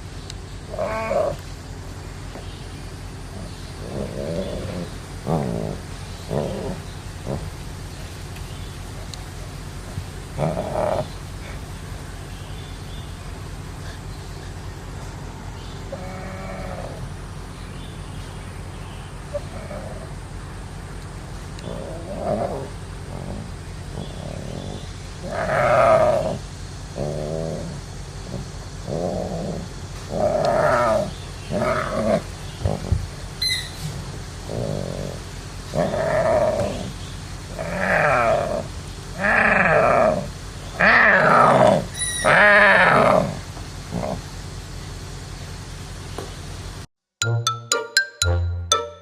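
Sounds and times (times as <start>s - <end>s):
tiger cub crying: 0.7s - 1.4s, 15.8s - 17.2s, 19.3s - 20.2s, 21.6s - 33.8s, 34.4s - 44.2s.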